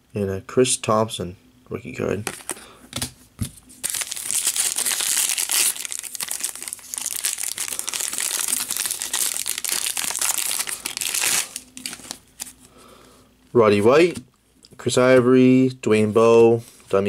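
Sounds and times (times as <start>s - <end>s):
foil wrapper crinkling: 3.7s - 12.6s.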